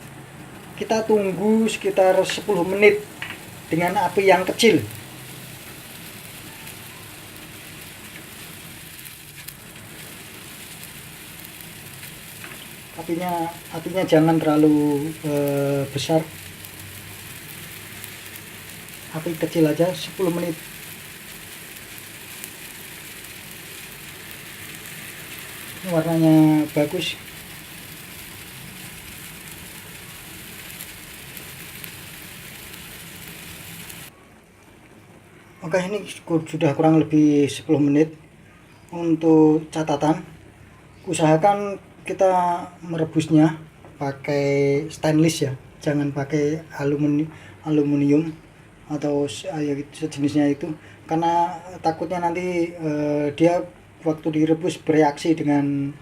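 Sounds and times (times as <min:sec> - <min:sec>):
pot simmering with bubbling hiss: 0:00.0 - 0:35.8.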